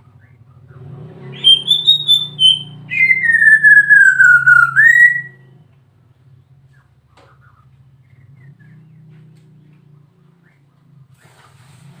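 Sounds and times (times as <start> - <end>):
bird whistling song: 1.2 - 5.4.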